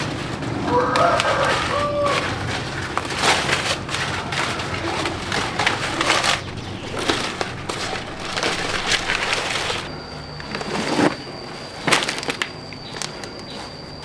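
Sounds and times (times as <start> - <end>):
crackling bursts: 0.0 - 14.0
crunching and rustling: 0.0 - 14.0.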